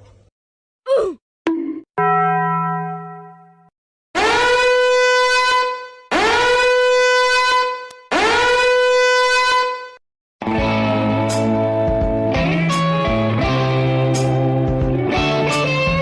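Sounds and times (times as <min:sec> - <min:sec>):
brassy horn blasts: 0:04.2 - 0:10.0.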